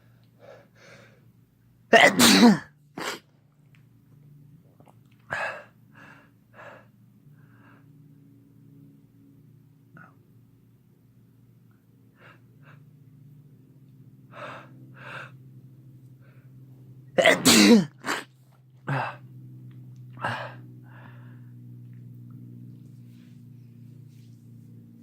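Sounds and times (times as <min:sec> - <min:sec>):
man sneezing: 0:01.9 - 0:03.2, 0:17.2 - 0:18.3.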